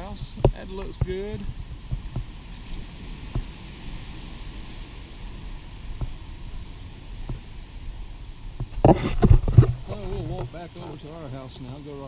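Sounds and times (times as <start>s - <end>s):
wind buffeting microphone: 0.0s - 12.0s
wind rushing through trees: 0.0s - 12.0s.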